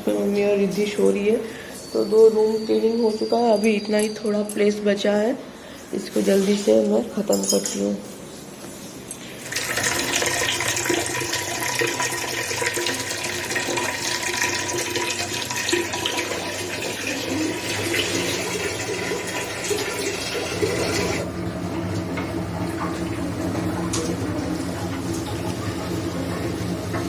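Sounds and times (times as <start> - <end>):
water running from a tap: 9.4 - 27.0.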